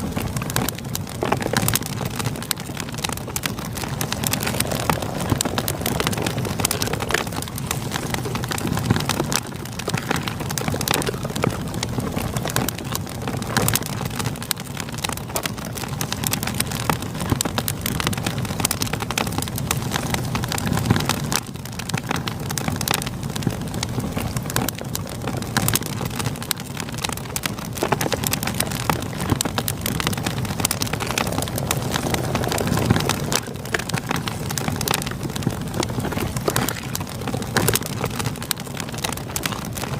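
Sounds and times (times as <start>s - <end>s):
campfire crackling and popping: 0.0s - 39.9s.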